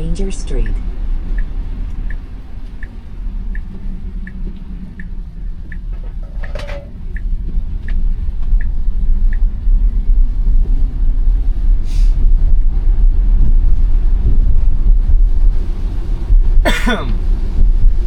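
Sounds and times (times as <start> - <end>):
turn signal ticking: 0.0 - 11.6
road rumble in car cabin: 0.0 - 18.0.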